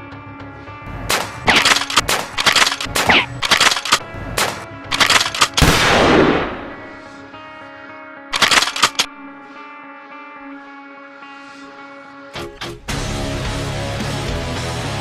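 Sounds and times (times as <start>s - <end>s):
background music: 0.0s - 15.0s
rapid gunfire sound effects: 1.1s - 6.9s, 8.4s - 9.1s.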